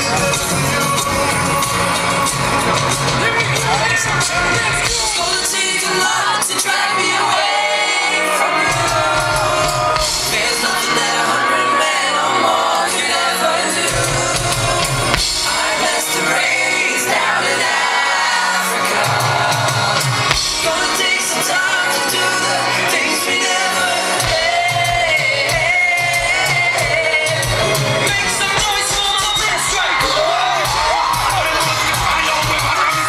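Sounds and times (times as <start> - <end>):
man singing: 0.0 - 17.4, 18.7 - 30.7
crowd shouting: 0.0 - 33.0
steady bass beat: 13.9 - 16.2.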